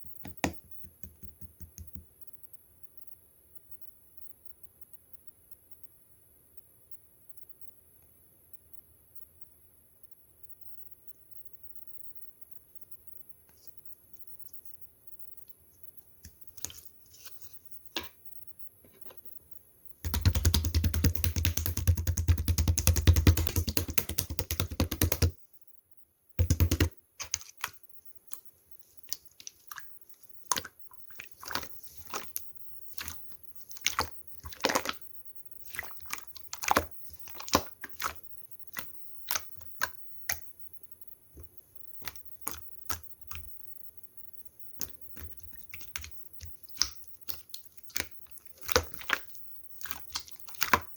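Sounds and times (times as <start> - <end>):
slime crackling and popping: 44.7 - 50.9.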